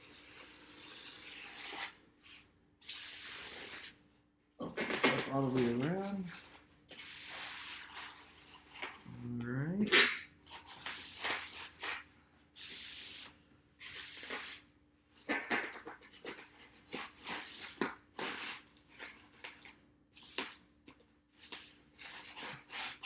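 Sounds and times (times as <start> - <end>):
packing tape ripping: 0.0 - 2.0, 2.8 - 4.0, 4.8 - 9.0, 9.9 - 12.0, 12.6 - 14.6, 15.3 - 20.6, 21.4 - 23.0
styrofoam crackling: 4.9 - 9.0, 15.8 - 20.6.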